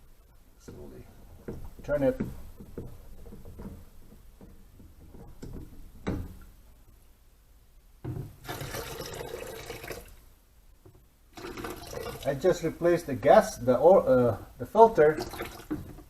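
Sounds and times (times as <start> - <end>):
water running and splashing: 11.3 - 12.3, 15.2 - 15.8.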